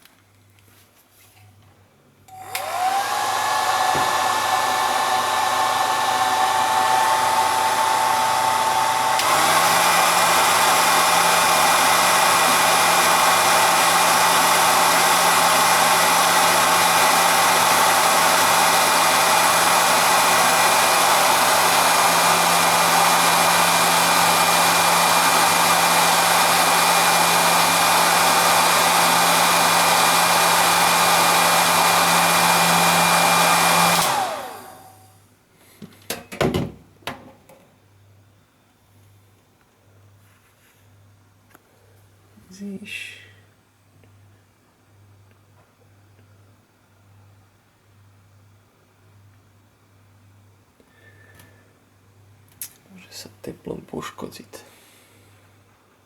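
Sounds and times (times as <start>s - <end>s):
hot-air blower motor whine: 2.3s - 35.2s.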